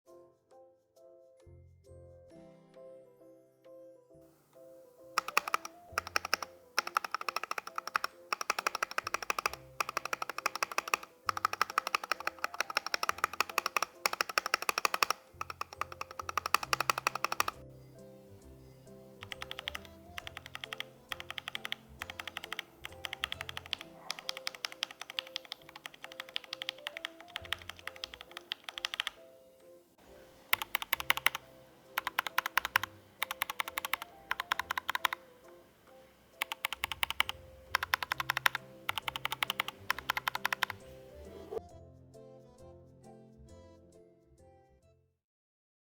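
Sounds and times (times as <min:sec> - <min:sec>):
background music: 0:00.0 - 0:45.1
typing on mechanical keyboard: 0:05.1 - 0:17.6, 0:19.2 - 0:29.2, 0:30.4 - 0:40.9.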